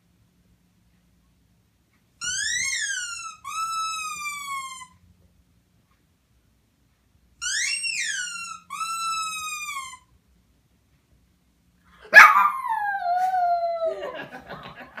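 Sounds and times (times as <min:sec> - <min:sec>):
puppy howling: 0:12.1 - 0:14.2.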